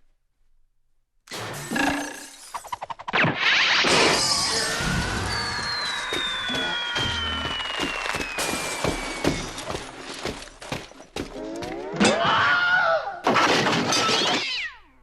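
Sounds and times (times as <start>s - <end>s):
crashes clatters and thuds: 2.5s - 11.8s
falling whistle tone: 4.0s - 10.4s.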